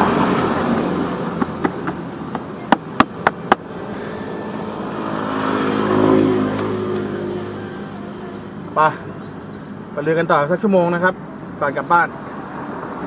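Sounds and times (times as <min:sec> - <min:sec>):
vehicle engine passing by: 0:00.0 - 0:02.3, 0:03.6 - 0:09.3
steady traffic hum: 0:00.0 - 0:13.0.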